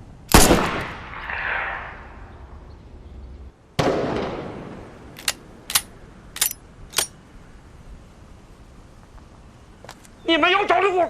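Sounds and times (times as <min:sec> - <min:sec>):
sharp metallic clinks: 0:05.2 - 0:07.2.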